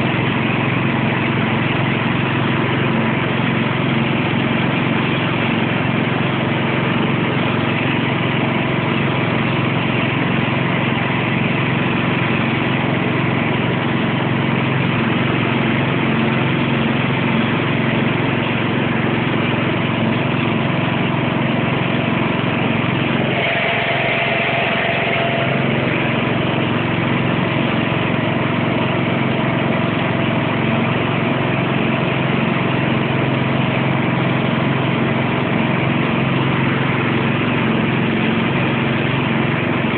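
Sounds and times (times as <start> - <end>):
garden tractor engine running: 0.0 - 39.9
short higher-pitched sound: 23.2 - 26.8.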